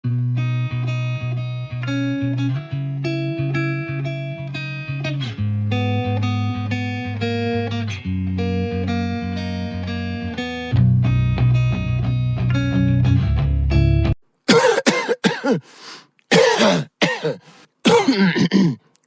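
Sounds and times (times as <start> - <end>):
plucked guitar: 0.0 - 14.2
bass line: 5.3 - 14.2.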